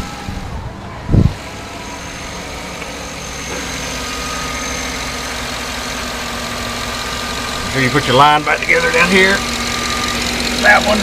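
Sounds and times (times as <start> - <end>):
thin high whine: 0.0 - 6.4
car engine idling: 0.0 - 11.0.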